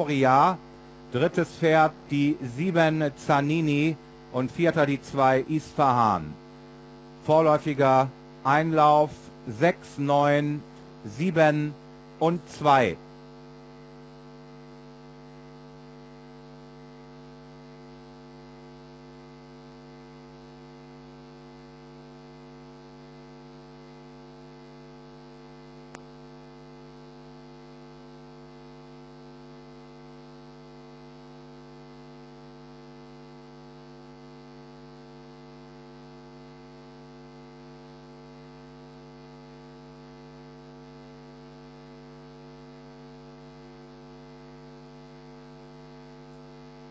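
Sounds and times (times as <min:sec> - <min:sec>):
electrical mains hum: 0:00.0 - 0:46.9
faint click: 0:25.9 - 0:26.1.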